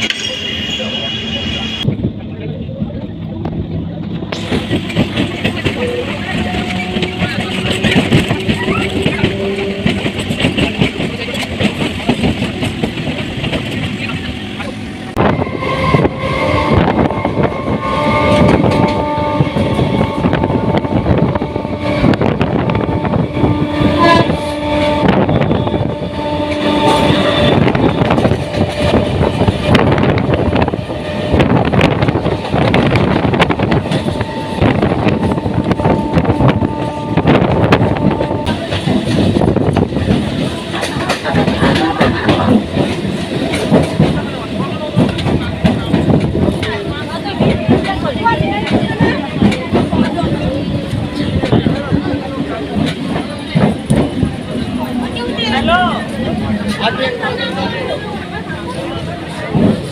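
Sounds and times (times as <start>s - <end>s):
train carriage rattling: 0.0s - 59.9s
train wheels clattering on rails: 3.4s - 14.8s, 22.0s - 59.9s
train horn: 5.8s - 10.6s, 15.1s - 39.6s.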